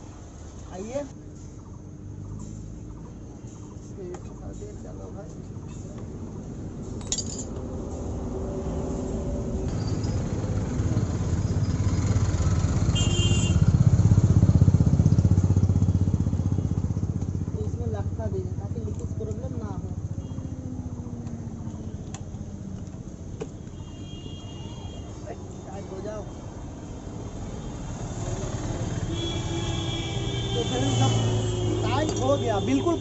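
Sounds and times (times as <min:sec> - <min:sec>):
motorcycle engine running: 0:10.5 - 0:21.8.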